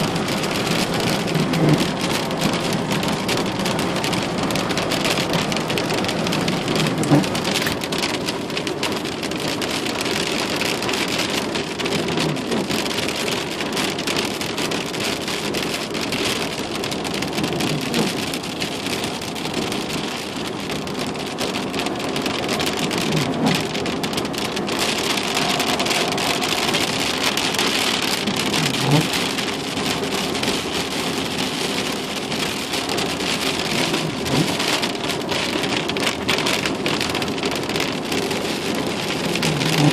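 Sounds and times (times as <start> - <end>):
steady rain hiss: 17.3 - 39.9.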